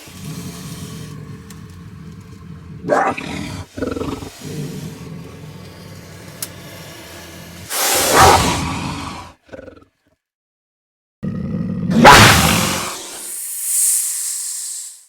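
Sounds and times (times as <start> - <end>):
monster roaring: 0.0 - 9.9, 11.2 - 13.4
monster growling: 0.0 - 10.0, 11.2 - 13.4
monster snarling cries: 11.9 - 13.1.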